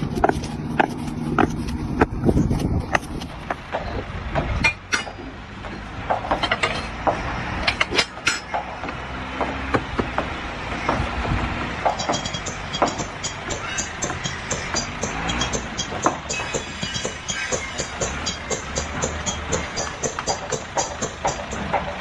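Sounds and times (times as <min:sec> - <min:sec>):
steady low rumble: 0:00.0 - 0:06.3
knocks and clanks: 0:00.0 - 0:22.0.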